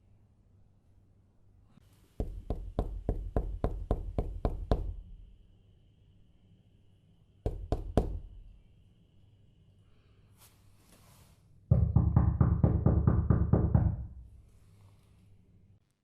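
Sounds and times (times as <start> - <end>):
knuckles knocking on door: 2.2 - 5.0, 7.5 - 8.4, 11.7 - 14.2.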